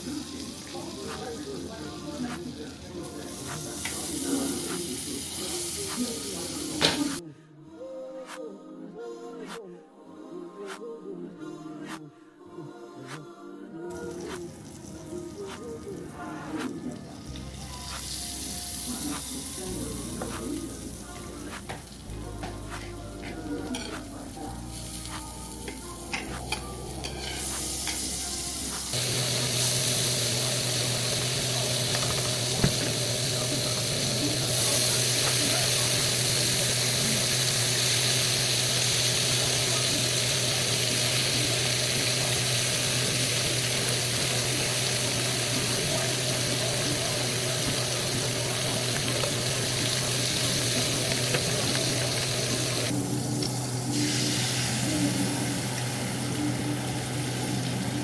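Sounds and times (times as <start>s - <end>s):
food sizzling in a pan: 0.0s - 7.2s, 13.9s - 58.0s.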